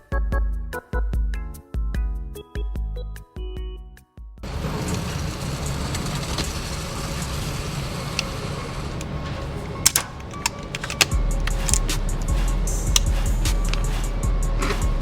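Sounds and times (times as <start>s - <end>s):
steady low rumbling: 4.4s - 15.0s
sharp clicks: 4.5s - 14.2s
deep bass line music: 10.7s - 15.0s.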